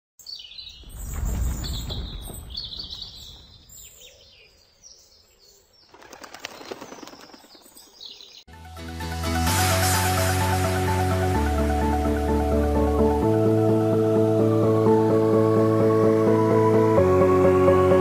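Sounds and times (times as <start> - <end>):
wing fluttering and rustling: 0.8 - 3.7, 5.8 - 8.1
background music: 8.5 - 18.0.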